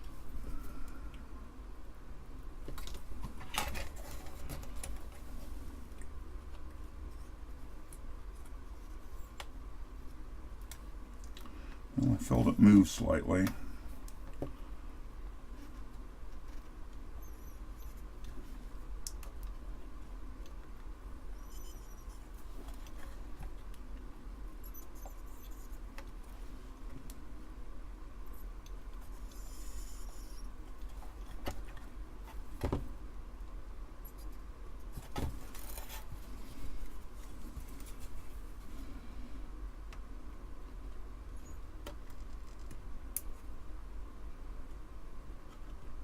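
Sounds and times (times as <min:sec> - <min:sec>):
steady low hum: 0:00.0 - 0:46.0
short high squeaks: 0:21.4 - 0:22.3.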